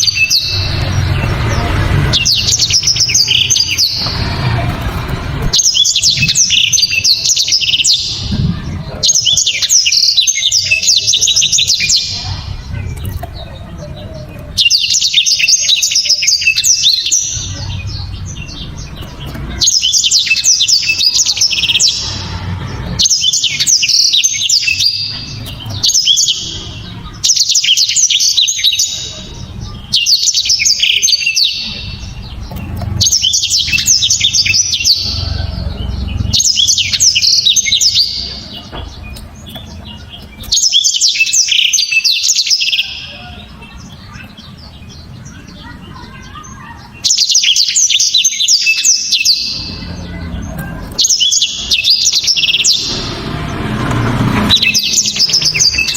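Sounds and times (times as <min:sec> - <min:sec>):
canary singing: 0:00.0 - 0:55.9
low rumble: 0:00.4 - 0:09.4, 0:31.7 - 0:40.5.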